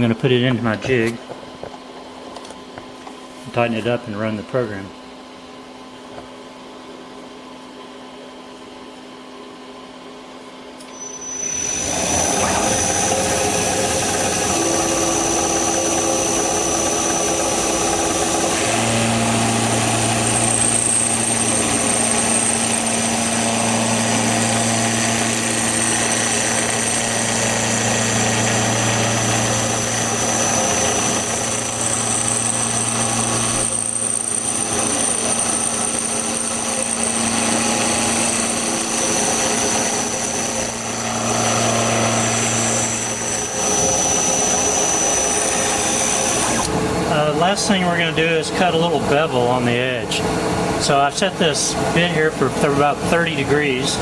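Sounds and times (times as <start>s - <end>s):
milling machine spindle whine: 10.8s - 54.0s.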